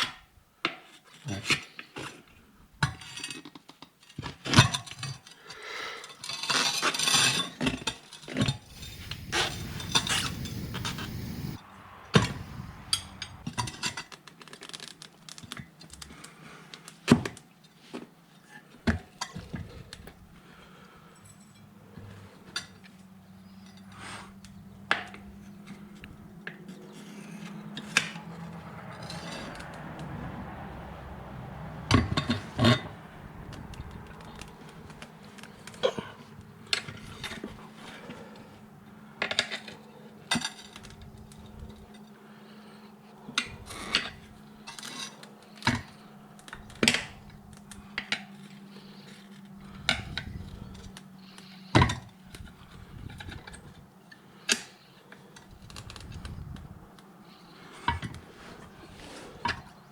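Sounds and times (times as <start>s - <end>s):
steady low hum: 8.7s - 13.5s.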